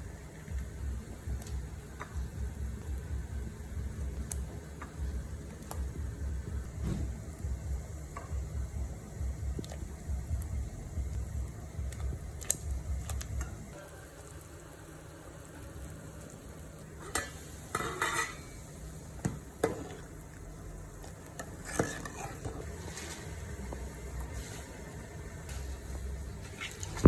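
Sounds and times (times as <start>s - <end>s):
utensil scraping a pot: 17.0s - 18.6s, 21.4s - 24.8s.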